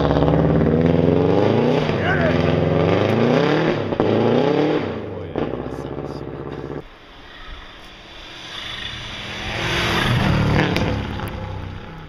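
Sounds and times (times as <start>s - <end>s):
rally car passing at speed: 0.0s - 12.0s
tyres on snow: 0.0s - 12.0s.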